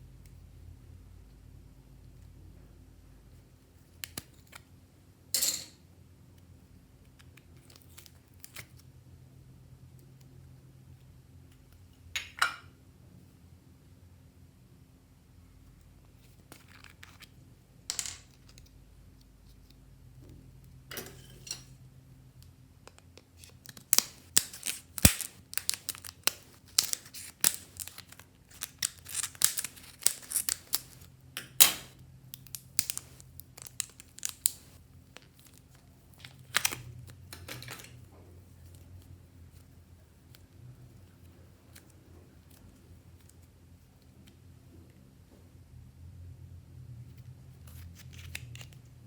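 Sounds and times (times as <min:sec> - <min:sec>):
slime popping and crackling: 0:23.7 - 0:31.0, 0:31.6 - 0:34.8.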